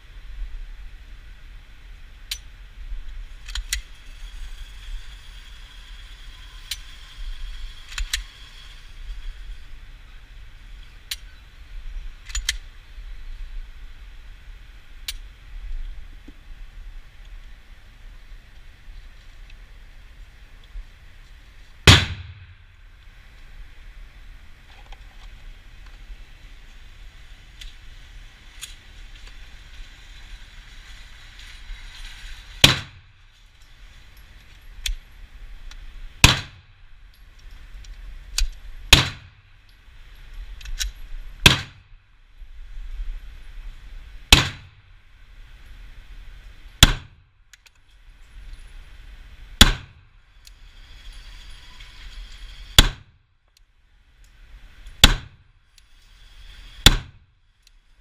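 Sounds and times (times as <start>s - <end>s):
pistol shots: 21.9s - 22.5s, 36.2s - 36.6s, 38.9s - 39.3s, 41.4s - 41.7s, 44.3s - 44.7s, 46.8s - 47.1s.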